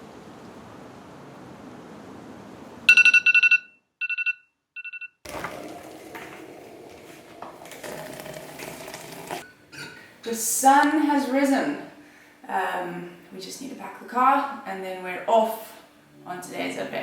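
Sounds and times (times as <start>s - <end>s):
phone alarm beeping: 2.9s - 5.2s.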